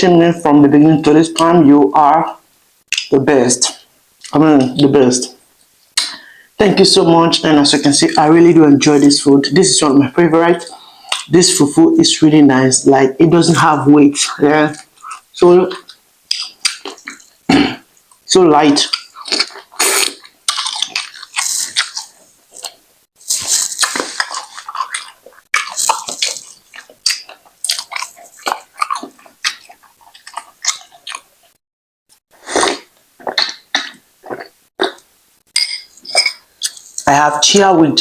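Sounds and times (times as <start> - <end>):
chewing and wet mouth sounds: 10.6 - 11.3, 14.2 - 17.4, 18.0 - 31.6, 32.5 - 35.1, 36.0 - 37.1.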